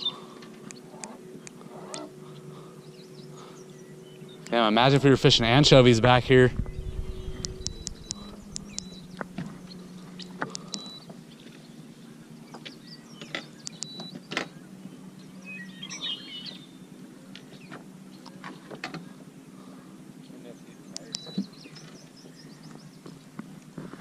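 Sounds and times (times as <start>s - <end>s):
steady low hum: 0.0s - 24.0s
sharp clicks: 6.5s - 9.5s, 10.4s - 11.0s, 13.6s - 14.1s, 20.9s - 21.4s
high bird chirps: 6.5s - 11.1s, 12.9s - 14.2s.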